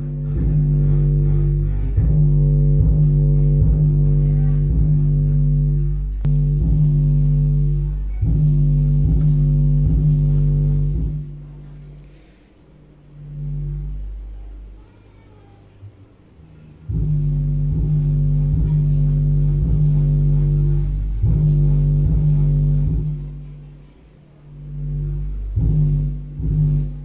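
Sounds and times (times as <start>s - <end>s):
bass-heavy song over loudspeaker: 0.0s - 11.9s, 16.9s - 23.5s, 24.6s - 27.0s.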